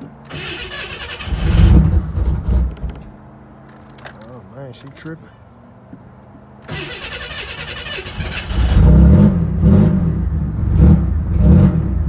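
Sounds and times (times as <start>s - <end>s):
engine starter cranking: 0.0s - 3.2s, 6.6s - 9.3s
car engine running with throttle blips: 0.0s - 3.3s, 5.9s - 12.0s.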